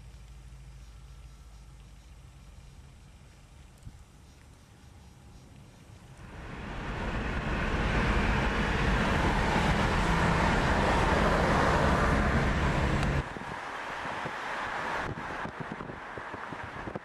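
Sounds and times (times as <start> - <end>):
engine hum: 0.0 - 17.0
rushing road noise: 6.1 - 17.0.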